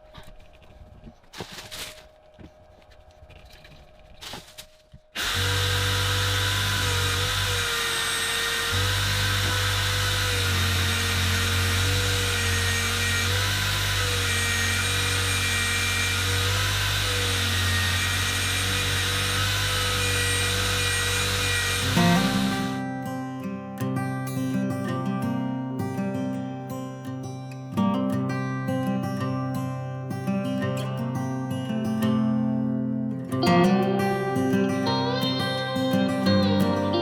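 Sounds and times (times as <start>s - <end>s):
power tool humming and whining: 5.2s - 22.9s.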